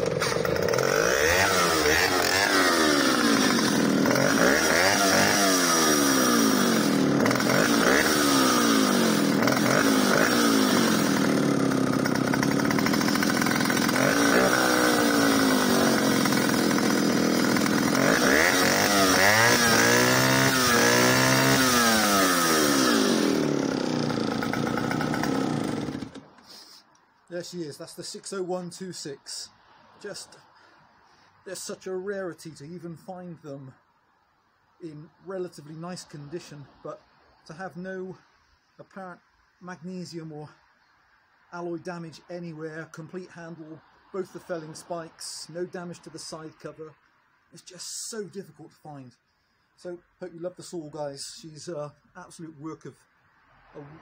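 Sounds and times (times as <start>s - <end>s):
two-stroke chainsaw revving: 0.0s - 26.8s.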